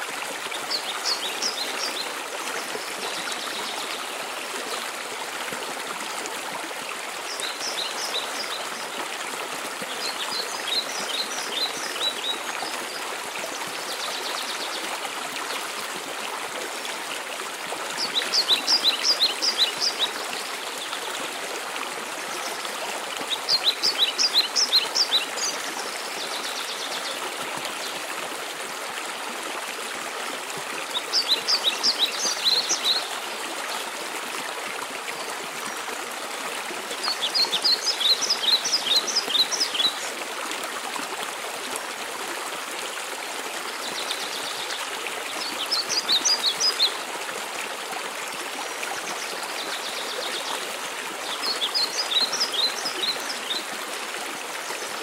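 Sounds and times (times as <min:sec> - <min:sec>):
songbird singing: 0:23.3 - 0:27.1.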